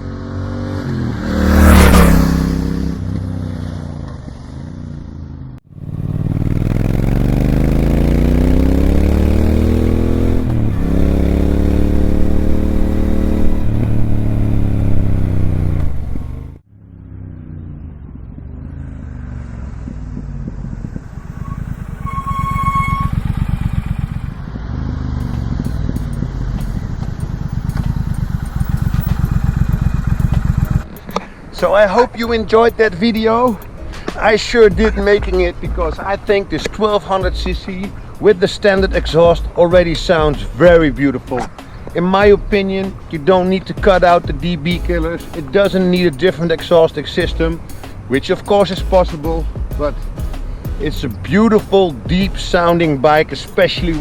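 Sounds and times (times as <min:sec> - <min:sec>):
motorcycle engine accelerating: 0:00.0 - 0:32.4, 0:43.8 - 0:54.0
short beep: 0:21.2 - 0:23.6.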